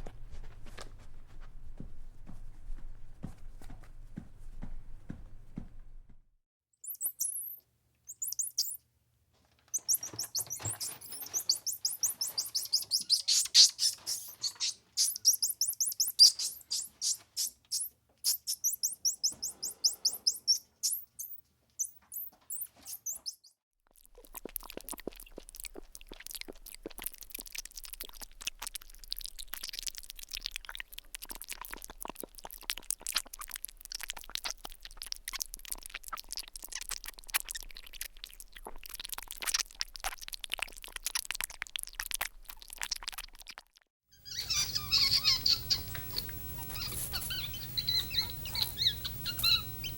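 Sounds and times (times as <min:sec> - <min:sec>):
pet bird chirping: 0:06.8 - 0:08.8, 0:09.7 - 0:23.6, 0:44.2 - 0:49.9
fast ticks and scratches: 0:09.8 - 0:17.6, 0:24.1 - 0:43.7.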